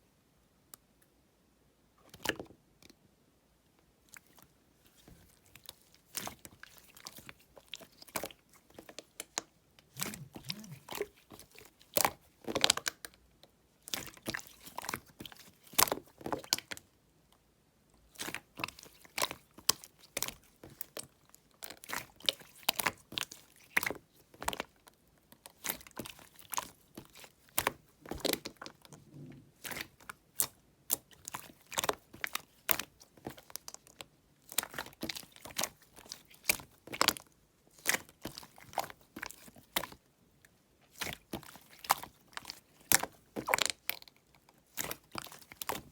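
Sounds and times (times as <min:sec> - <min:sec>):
slime squeezed by hand: 0:09.9 - 0:11.2.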